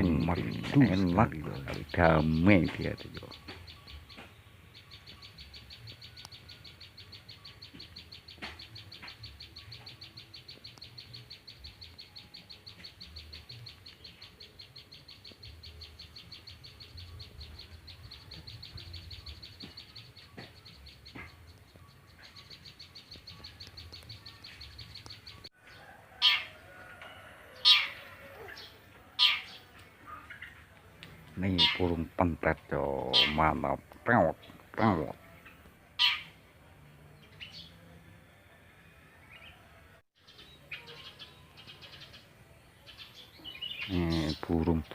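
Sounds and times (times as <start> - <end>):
loud bird calls: 0.0 - 30.7, 31.3 - 36.4
songbird singing high notes: 31.4 - 36.4.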